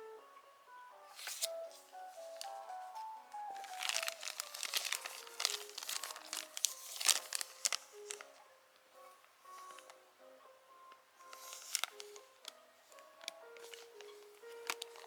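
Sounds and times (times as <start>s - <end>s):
simple melody of high notes: 0.0s - 4.6s
plastic packaging crinkling: 1.1s - 8.4s, 9.0s - 10.0s, 11.2s - 15.0s.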